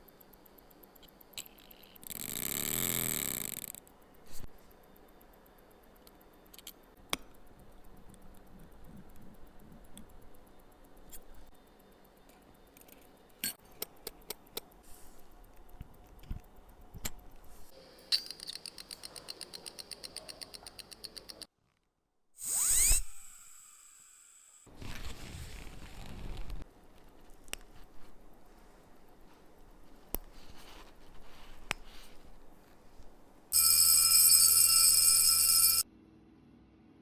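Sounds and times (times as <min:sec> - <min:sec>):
rapid watch mechanism clicks: 0:00.0 - 0:21.5
metal tools tapping watch parts: 0:12.2 - 0:17.5, 0:18.1 - 0:21.5.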